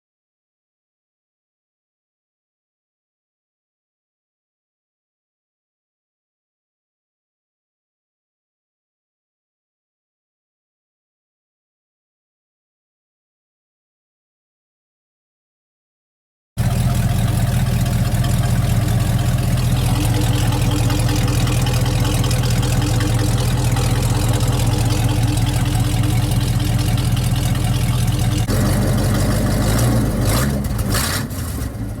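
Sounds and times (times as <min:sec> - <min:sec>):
pickup engine running: 0:16.6 - 0:32.0.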